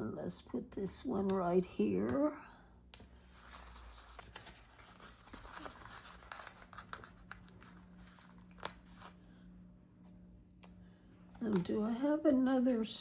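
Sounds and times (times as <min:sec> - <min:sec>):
paper stickers rustling and peeling: 0:03.0 - 0:09.2.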